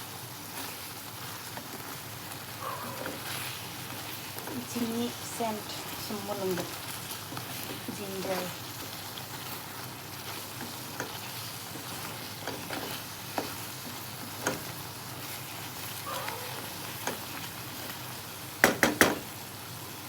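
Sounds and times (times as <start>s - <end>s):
curry sizzling in a pot: 0.0s - 20.0s
loud knocks: 18.6s - 19.3s.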